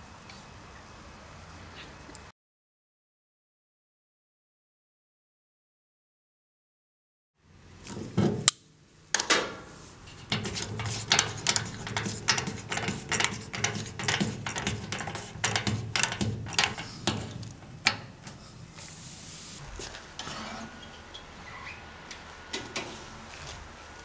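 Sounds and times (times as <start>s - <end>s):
machine clicks and knocks: 10.3s - 18.4s.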